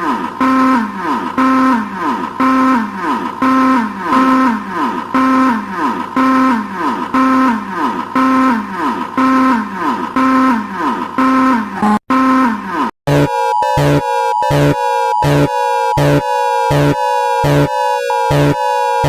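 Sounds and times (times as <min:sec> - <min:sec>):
synthesized emergency alert siren: 0:00.0 - 0:19.0
high steady alert tone: 0:00.4 - 0:04.6, 0:08.2 - 0:19.0.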